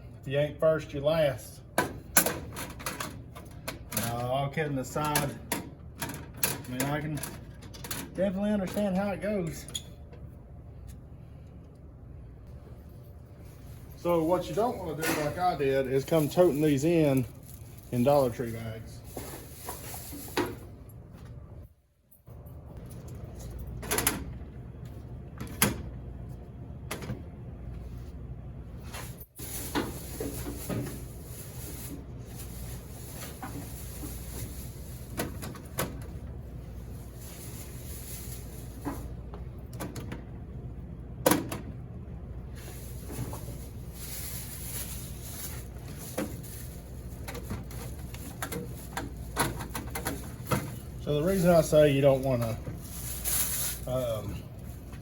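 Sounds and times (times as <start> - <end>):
steady low hum: 7.1 - 55.0.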